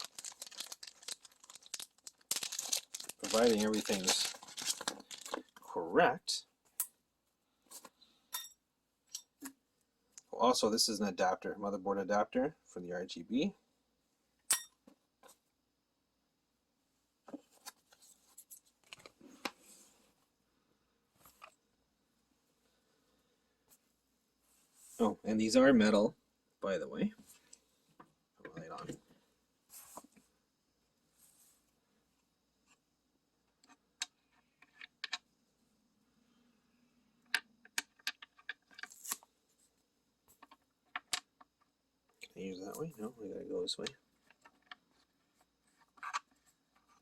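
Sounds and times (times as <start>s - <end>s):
rustling and handling: 0.0s - 5.8s, 17.2s - 20.4s, 21.1s - 23.0s, 23.6s - 25.2s, 27.1s - 30.4s.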